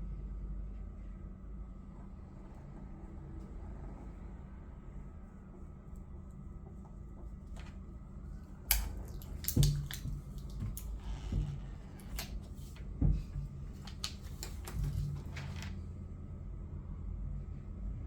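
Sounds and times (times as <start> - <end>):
soft rustles: 5.3 - 15.8.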